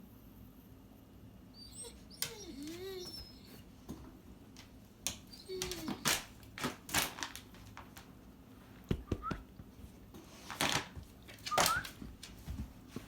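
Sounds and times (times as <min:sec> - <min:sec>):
dog squeaks: 0:01.6 - 0:03.6, 0:05.3 - 0:06.2.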